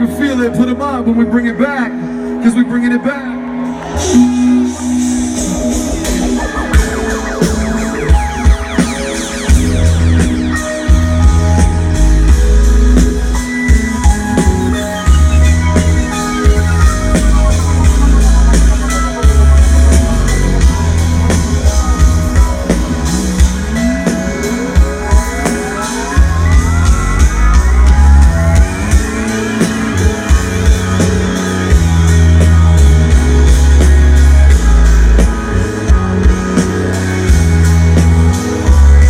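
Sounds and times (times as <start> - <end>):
drum kit: 3.8 - 39.0
heavy bass line: 4.0 - 39.0
rising pitch sweep: 4.1 - 23.3.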